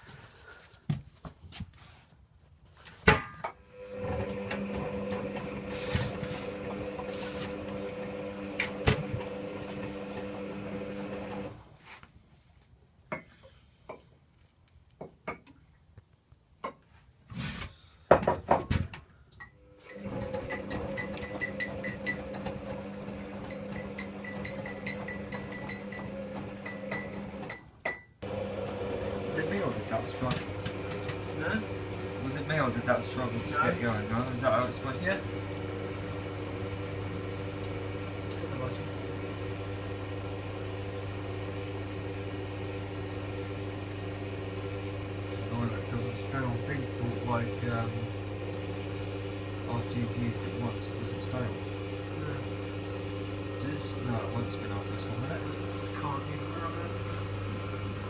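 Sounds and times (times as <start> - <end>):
washing machine motor humming: 3.7 - 11.6, 19.8 - 27.6, 28.2 - 58.0.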